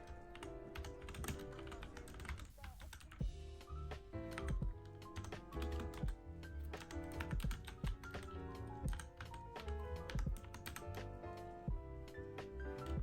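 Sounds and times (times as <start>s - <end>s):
mechanical keyboard typing: 0.0s - 3.2s, 4.3s - 11.2s
soft background music: 0.0s - 13.0s.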